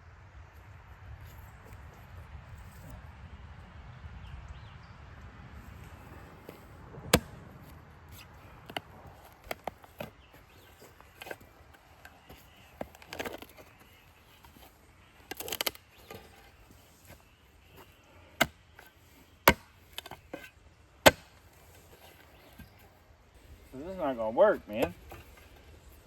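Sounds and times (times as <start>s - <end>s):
hand tool chopping wood: 6.5s - 7.3s, 15.3s - 17.2s, 17.8s - 22.8s, 24.7s - 25.6s.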